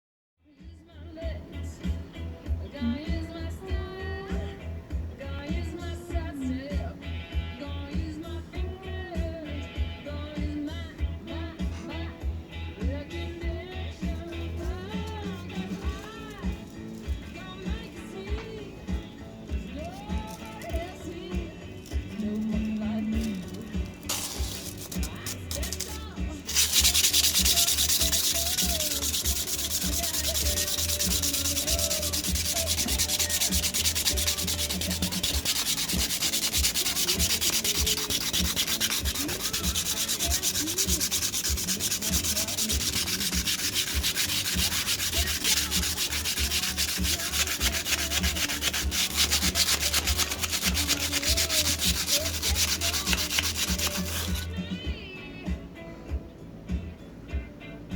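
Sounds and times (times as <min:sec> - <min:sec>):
sandpaper sanding resin: 0:19.8 - 0:20.9, 0:22.2 - 0:54.5.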